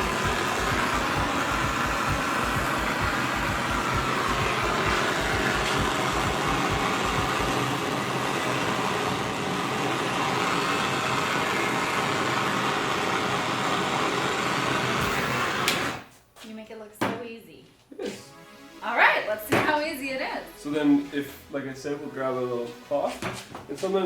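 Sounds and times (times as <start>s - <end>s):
torch roaring hiss: 0.0s - 16.1s.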